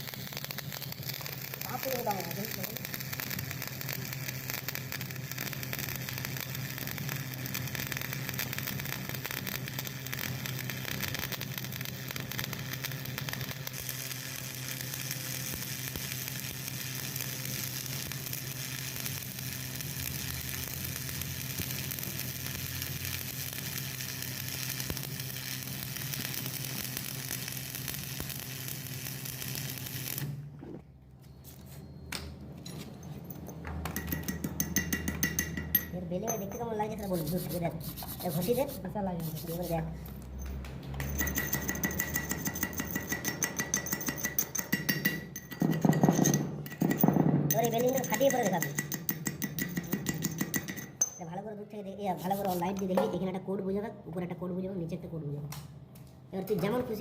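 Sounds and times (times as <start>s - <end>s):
welding arc crackling: 0.0s - 30.5s, 36.8s - 40.0s, 52.2s - 52.9s.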